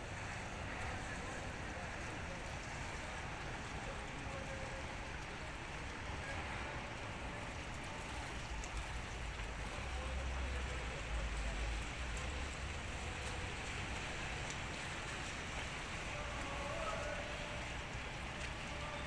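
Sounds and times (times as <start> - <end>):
steady rain falling: 0.0 - 19.0.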